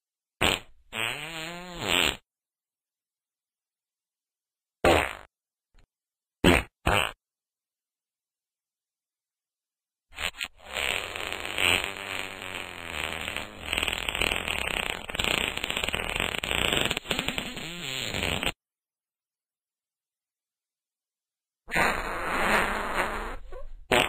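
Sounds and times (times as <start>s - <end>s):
long wavering fart: 0.4s - 2.2s, 4.8s - 5.3s, 6.4s - 7.2s, 10.1s - 18.6s, 21.7s - 24.0s.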